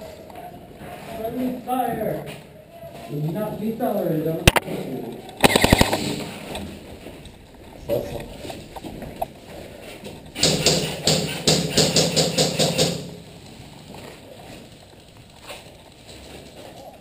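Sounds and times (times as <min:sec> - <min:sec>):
rapid airsoft gunfire: 0:05.4 - 0:06.2, 0:10.4 - 0:13.2.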